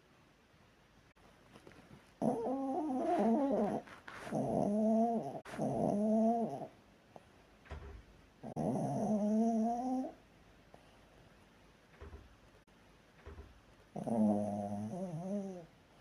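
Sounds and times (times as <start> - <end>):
dog snoring: 2.2 - 6.7, 8.4 - 10.2, 14.0 - 15.7.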